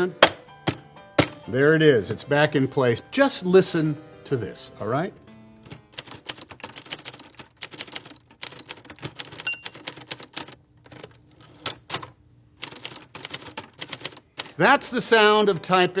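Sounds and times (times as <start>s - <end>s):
typewriter keys striking: 0.2s - 1.4s, 5.7s - 10.6s, 12.6s - 14.6s
typewriter bell ring: 9.4s - 10.0s.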